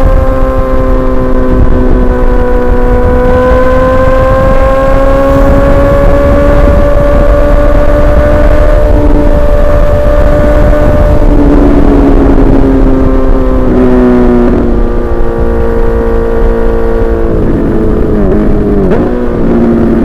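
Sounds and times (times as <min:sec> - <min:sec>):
motorcycle engine running: 0:00.0 - 0:20.0
wind buffeting microphone: 0:00.0 - 0:20.0.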